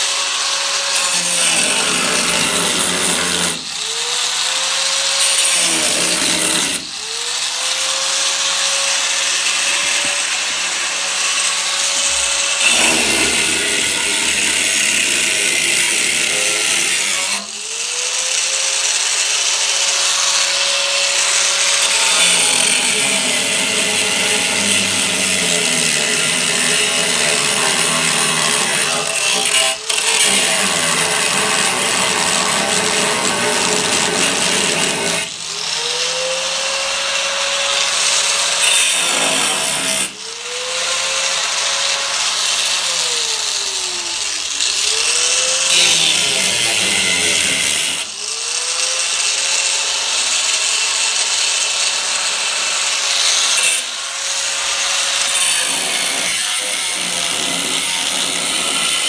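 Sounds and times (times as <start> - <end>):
power tool cutting sheet steel: 0.0 - 59.0.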